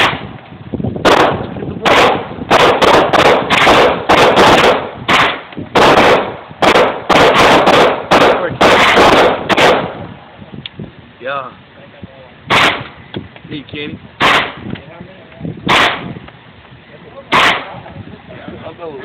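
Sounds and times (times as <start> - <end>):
rapid loud gunshots: 0.0 - 0.3, 1.0 - 10.0, 12.5 - 12.9, 14.2 - 14.6, 15.7 - 16.2, 17.3 - 17.7.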